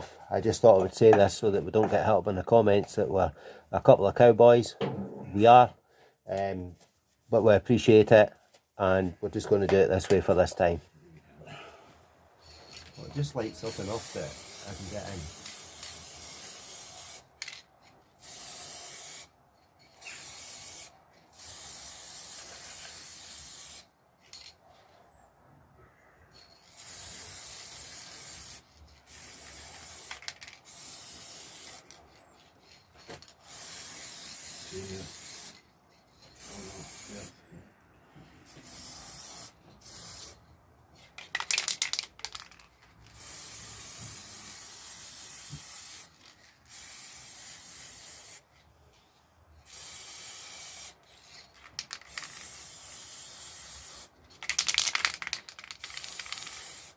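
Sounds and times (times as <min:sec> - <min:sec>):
spray can rattling: 0:12.4 - 0:24.5, 0:26.3 - 0:37.3, 0:38.6 - 0:40.4, 0:41.0 - 0:48.4, 0:49.6 - 0:56.9
spray paint can hissing: 0:13.6 - 0:17.6, 0:18.2 - 0:19.3, 0:19.9 - 0:23.9, 0:26.6 - 0:32.0, 0:33.4 - 0:35.6, 0:36.4 - 0:37.3, 0:38.5 - 0:40.4, 0:41.2 - 0:48.5, 0:49.6 - 0:56.9.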